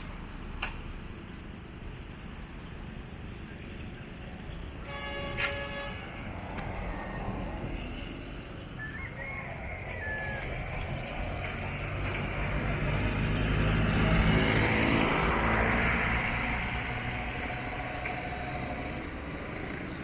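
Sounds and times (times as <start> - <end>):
vehicle passing by: 6.1 - 20.0.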